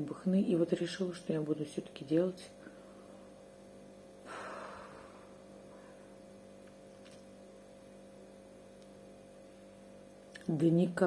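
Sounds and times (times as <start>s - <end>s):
faint electrical hum: 0.0s - 11.0s
short breath: 4.3s - 6.1s.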